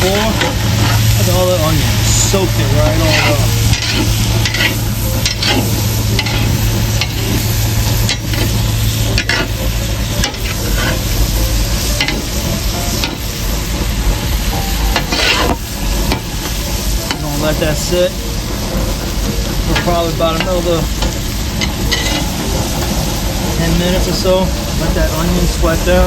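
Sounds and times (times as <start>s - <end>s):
utensil scraping a pot: 0.0s - 18.2s
onion sizzling in grease: 0.0s - 26.0s
steady low hum: 0.0s - 26.0s.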